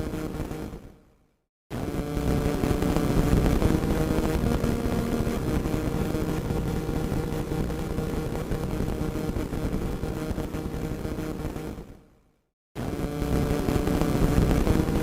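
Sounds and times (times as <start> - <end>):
radio static hiss and crackle: 1.8 - 11.8, 12.8 - 15.0.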